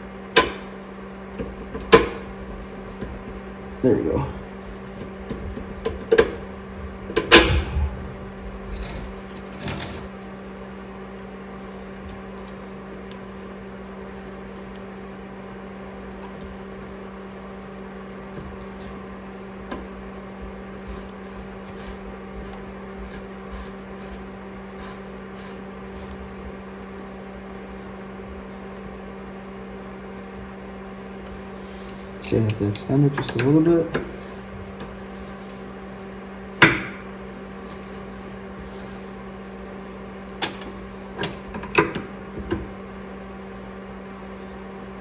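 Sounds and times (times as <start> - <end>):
electrical hum: 0.0 - 45.0
knocks and clicks of hand tools: 0.4 - 0.7, 1.4 - 2.3, 40.4 - 42.7.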